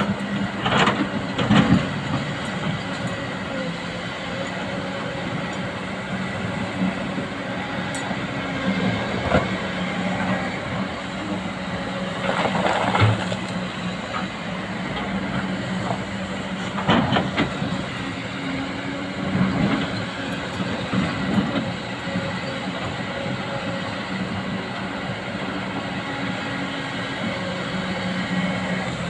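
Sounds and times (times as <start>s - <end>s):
excavator diesel engine running: 0.0s - 29.0s
machine clanking and scraping: 0.6s - 3.1s, 12.2s - 14.3s.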